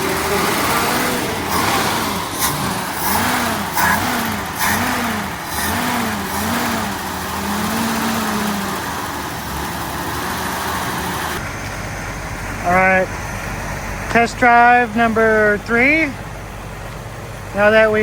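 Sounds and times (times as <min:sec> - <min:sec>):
car engine revving: 0:00.0 - 0:17.7.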